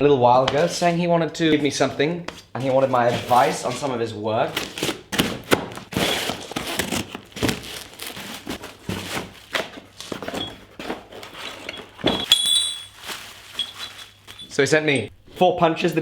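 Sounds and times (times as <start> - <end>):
packaging crinkling and tearing: 4.5 - 11.4, 12.9 - 14.5.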